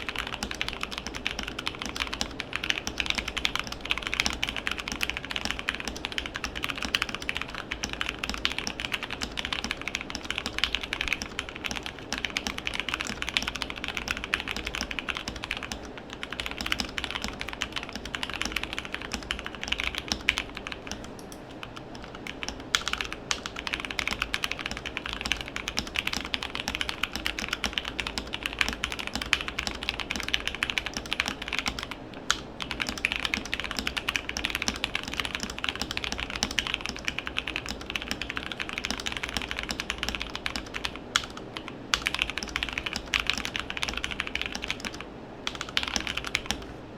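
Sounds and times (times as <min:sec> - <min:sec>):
mechanical keyboard typing: 0:00.0 - 0:46.7.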